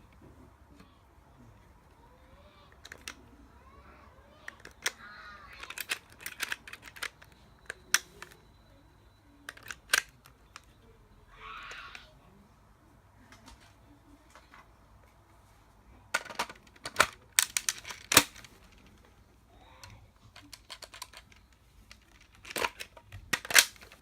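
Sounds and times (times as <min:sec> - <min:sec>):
plastic toy clicking and snapping: 0:02.7 - 0:03.2, 0:04.4 - 0:08.4, 0:09.5 - 0:10.7, 0:16.1 - 0:18.8, 0:19.8 - 0:24.0.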